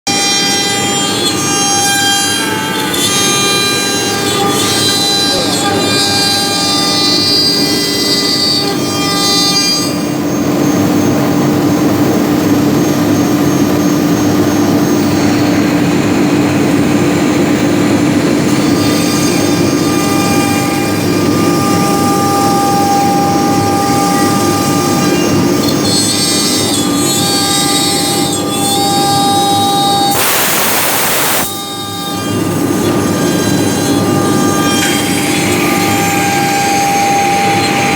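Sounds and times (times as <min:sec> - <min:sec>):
cnc router whining: 0:00.1 - 0:37.9
loud burst of noise: 0:29.5 - 0:32.5.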